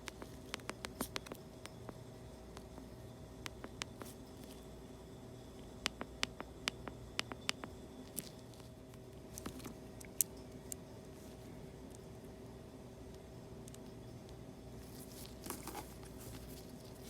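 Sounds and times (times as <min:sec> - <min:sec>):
hand tools clicking and tapping: 0:00.0 - 0:02.0
steady electrical hum: 0:00.0 - 0:17.0.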